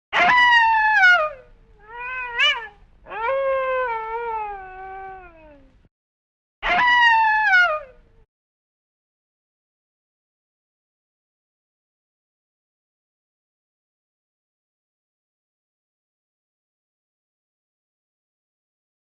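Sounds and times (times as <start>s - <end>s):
wolf howling: 0.2s - 5.7s, 6.6s - 8.0s.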